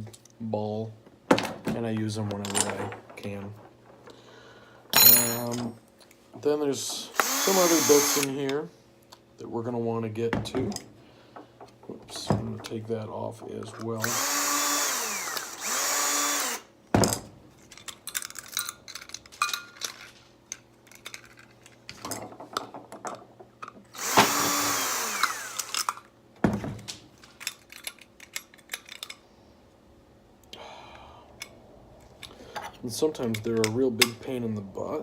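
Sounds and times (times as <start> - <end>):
metal screws clicking and clattering: 4.9 - 5.7, 17.6 - 23.8, 27.3 - 29.2
cordless drill motor spinning: 7.1 - 8.4, 14.0 - 16.7, 24.0 - 25.9.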